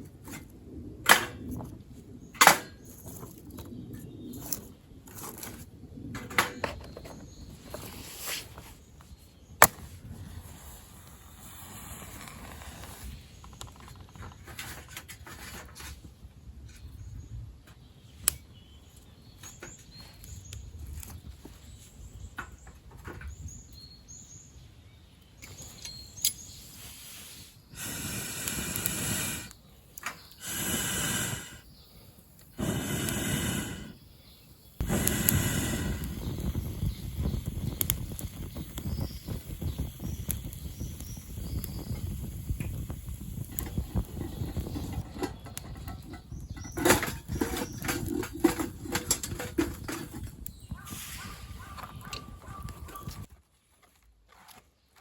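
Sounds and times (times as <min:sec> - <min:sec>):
campfire crackling: 0:09.6 - 0:14.7, 0:26.6 - 0:51.2
rushing hissing bursts: 0:10.4 - 0:13.4, 0:26.7 - 0:29.6, 0:30.2 - 0:31.7, 0:32.5 - 0:34.1, 0:34.8 - 0:45.1
birds chirping: 0:16.7 - 0:53.3.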